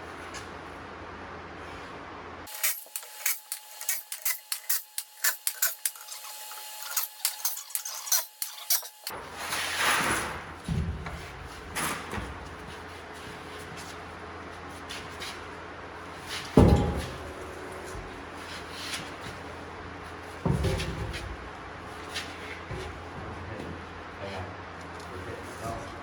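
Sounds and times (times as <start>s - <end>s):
steady low hum: 15.0s - 26.0s.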